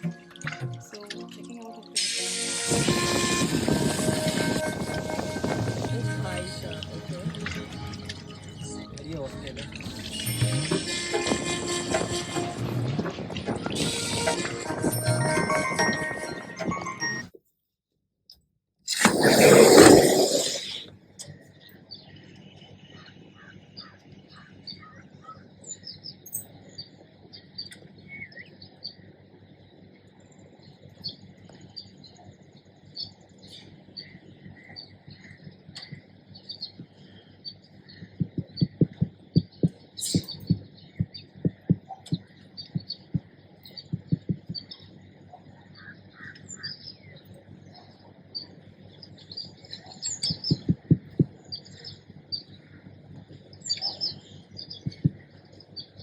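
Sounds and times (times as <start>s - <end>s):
loud brief rush of noise: 2.0s - 6.4s
birds chirping and calling: 21.3s - 29.1s, 32.9s - 56.0s
soft low thumps: 38.0s - 44.8s, 50.3s - 51.4s, 54.8s - 55.2s.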